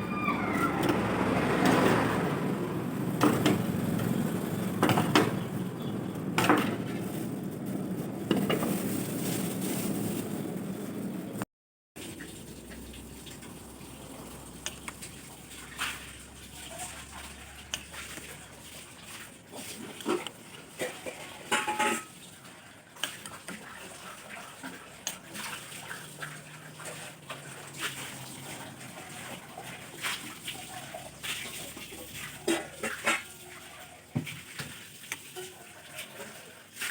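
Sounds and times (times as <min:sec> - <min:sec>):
liquid splashing: 0:12.0 - 0:36.9
utensils and dishes clinking: 0:12.2 - 0:22.4.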